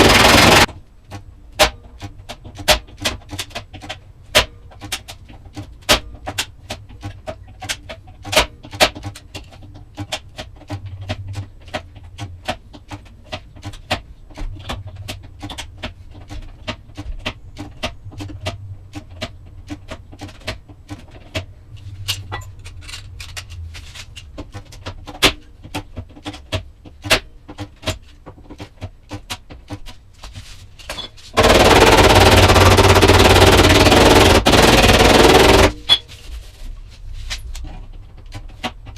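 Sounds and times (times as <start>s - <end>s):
loud power tool: 0.0s - 0.7s, 31.4s - 35.8s
hammer tapping sheet metal: 31.4s - 36.1s.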